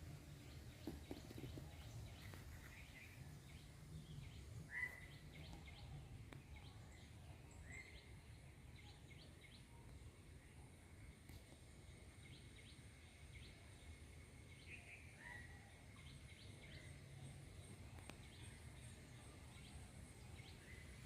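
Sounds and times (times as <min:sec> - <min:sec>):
faint bird chirps: 0:00.5 - 0:21.0.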